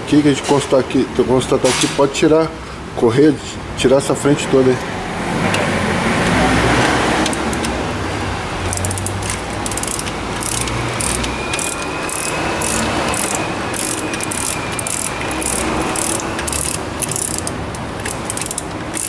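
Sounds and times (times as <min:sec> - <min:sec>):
ratchet wrench clicking: 0:06.8 - 0:07.8, 0:08.6 - 0:19.0.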